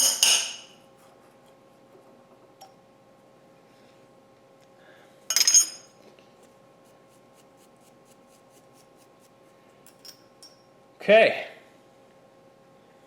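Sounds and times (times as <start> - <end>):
faint steady hum: 0.0 - 13.0
metallic clink with ringing: 5.3 - 6.0.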